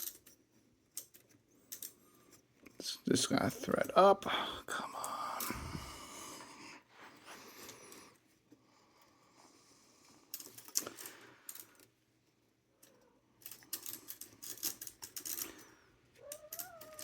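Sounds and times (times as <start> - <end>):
cat meowing: 16.2 - 17.0.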